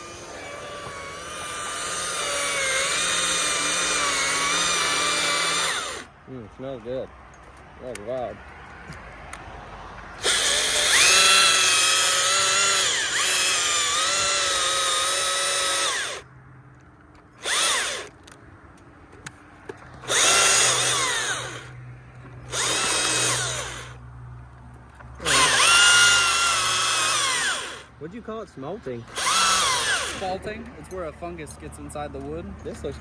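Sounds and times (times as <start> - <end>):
chainsaw cutting limbs: 0.0 - 6.2, 10.2 - 16.3, 17.4 - 18.2, 19.9 - 21.8, 22.4 - 24.0, 25.2 - 27.9, 29.0 - 30.4.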